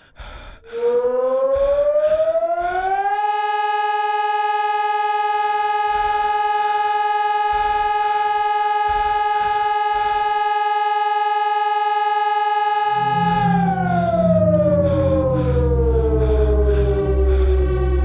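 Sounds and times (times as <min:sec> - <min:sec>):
siren steady pitch: 0:00.7 - 0:18.0
faint low rumbles: 0:13.0 - 0:18.0.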